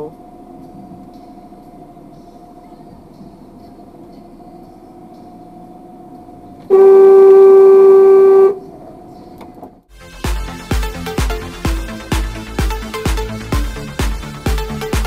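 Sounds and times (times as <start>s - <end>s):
car horn blast: 6.7s - 8.7s
electronic dance music: 9.9s - 15.0s.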